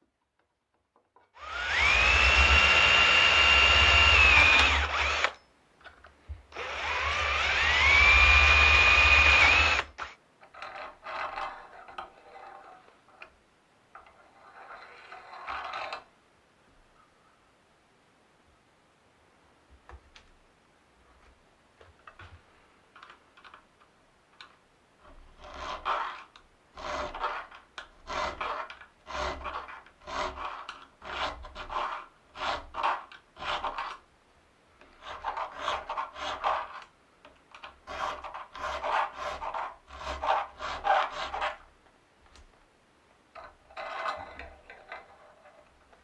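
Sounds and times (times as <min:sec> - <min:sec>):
hand tool stroking wood: 0:01.4 - 0:05.3, 0:06.6 - 0:10.1, 0:25.4 - 0:33.8, 0:37.9 - 0:41.6.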